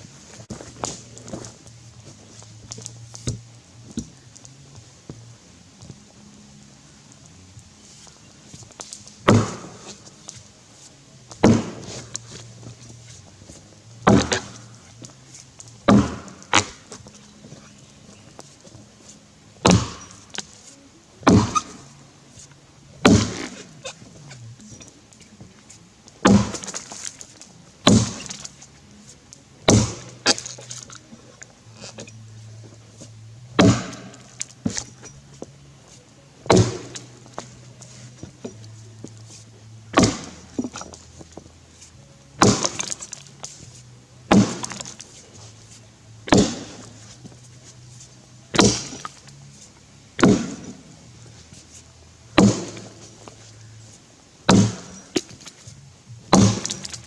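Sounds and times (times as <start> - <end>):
axe chopping into log: 9.2 - 10.1, 11.3 - 13.2, 14.0 - 15.1, 15.9 - 17.0, 19.6 - 20.4, 21.2 - 21.9, 23.0 - 24.4, 26.2 - 27.1, 27.8 - 28.5, 29.7 - 31.0, 33.6 - 35.1, 36.5 - 39.3, 39.9 - 41.0, 42.4 - 43.6, 44.3 - 45.1, 46.3 - 47.2, 48.6 - 49.3, 50.2 - 50.8, 52.4 - 53.5, 54.5 - 55.5, 56.3 - 57.0.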